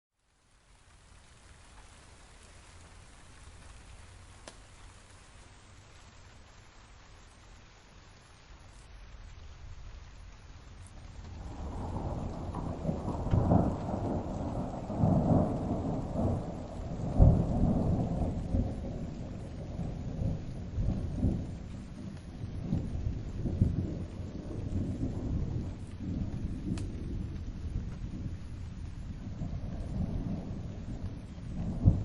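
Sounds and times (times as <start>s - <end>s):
rain: 0.1s - 32.0s
thunder rumbling: 8.6s - 32.0s.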